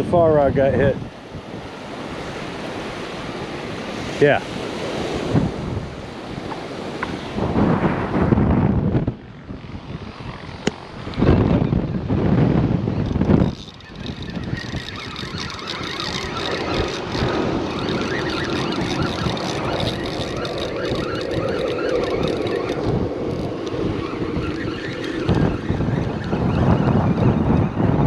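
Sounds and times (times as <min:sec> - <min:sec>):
surf on beach: 0:00.0 - 0:15.1, 0:21.2 - 0:28.0
wind buffeting microphone: 0:00.0 - 0:28.0.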